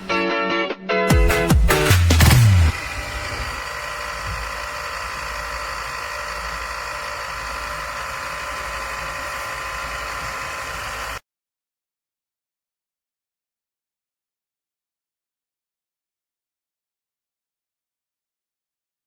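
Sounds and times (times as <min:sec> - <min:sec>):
robot vacuum cleaner humming: 0:01.9 - 0:11.2.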